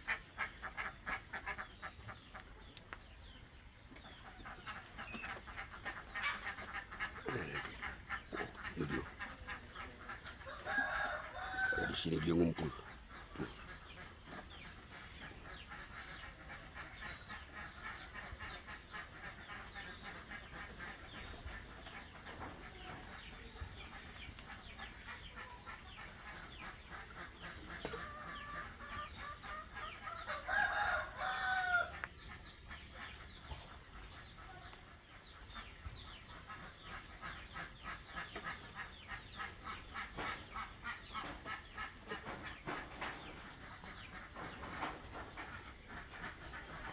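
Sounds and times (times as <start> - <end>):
chickens clucking: 0.0 - 46.9
rooster crowing: 10.5 - 11.9, 30.3 - 31.9.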